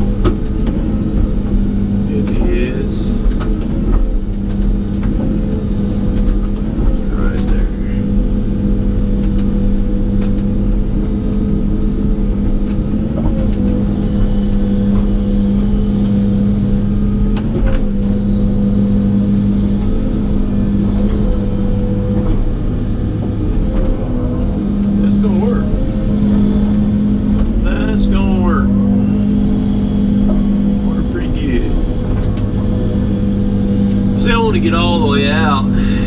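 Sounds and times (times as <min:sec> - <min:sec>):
excavator diesel engine running: 0:00.0 - 0:36.0.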